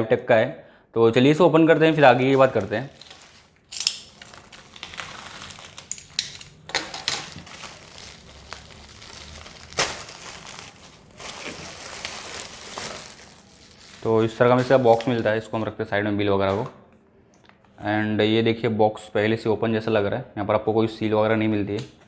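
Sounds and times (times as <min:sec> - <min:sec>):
packaging crinkling and rustling: 0:01.8 - 0:15.4.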